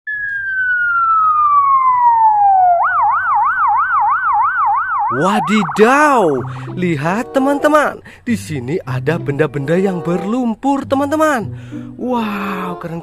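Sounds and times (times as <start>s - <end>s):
electronic police siren: 0.1s - 6.8s.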